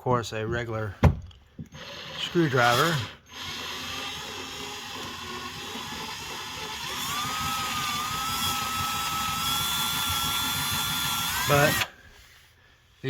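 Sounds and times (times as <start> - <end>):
cordless drill motor whine: 1.7 - 11.9.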